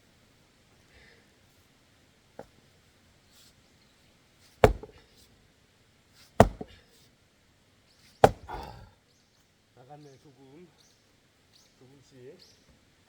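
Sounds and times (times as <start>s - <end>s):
log rattling: 4.6s - 5.0s, 6.4s - 6.8s, 8.2s - 8.9s
axe chopping log: 4.6s - 5.1s, 6.4s - 6.8s, 8.2s - 8.9s.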